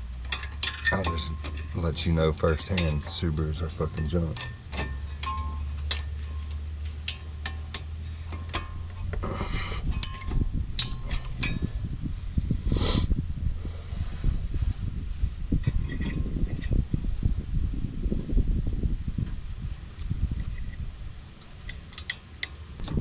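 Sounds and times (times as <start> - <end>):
metallic clicks of brake parts: 0.0 - 11.8, 21.4 - 23.0
low rumble: 0.0 - 21.8
low hum: 0.0 - 23.0.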